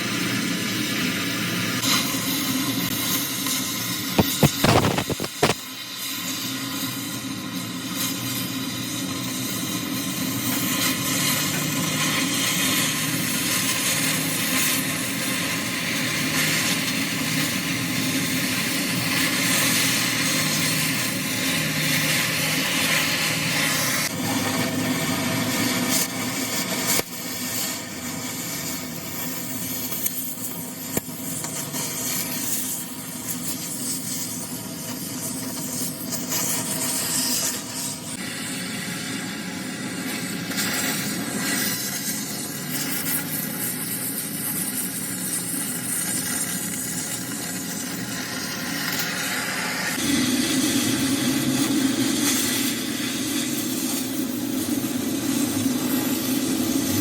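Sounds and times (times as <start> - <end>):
power tool cutting metal: 0.0 - 57.0.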